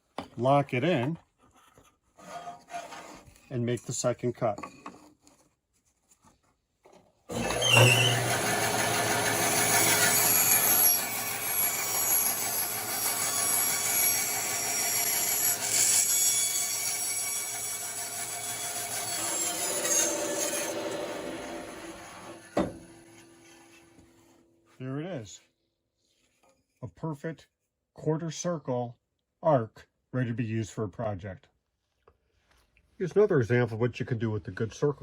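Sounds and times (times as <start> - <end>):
bandsaw motor hum: 7.3 - 24.1.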